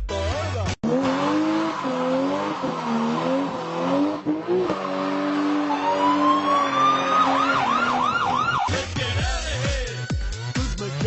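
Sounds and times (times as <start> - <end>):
car engine revving: 0.8 - 9.1
siren rising tone: 0.9 - 8.8.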